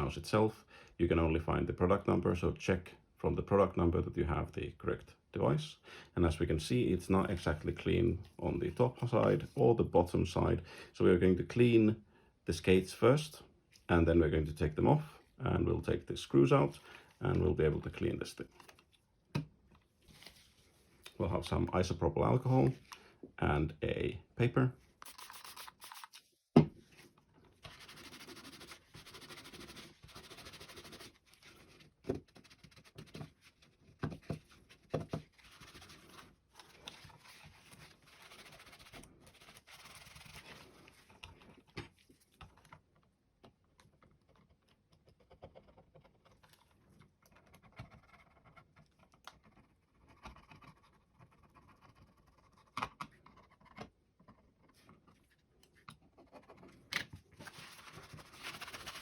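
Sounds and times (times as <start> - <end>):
paper scrubbing plastic: 25.0 - 26.2, 27.6 - 33.8, 34.5 - 41.2, 57.4 - 59.0
faint scratching and taps: 26.9 - 56.8.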